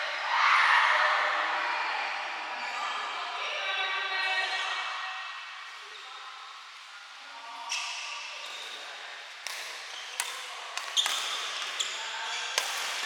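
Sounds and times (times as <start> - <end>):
rackets striking shuttlecock: 12.6 - 13.0.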